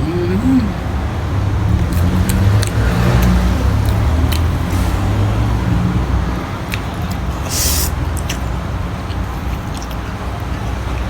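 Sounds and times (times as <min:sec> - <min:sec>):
eating clicks: 0:01.8 - 0:04.7, 0:06.6 - 0:11.0
short hiss: 0:07.5 - 0:08.0.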